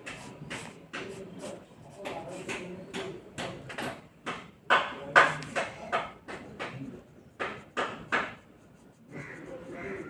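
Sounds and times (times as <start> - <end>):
drawing tool scratching on paper: 0.0 - 2.6, 5.2 - 10.0.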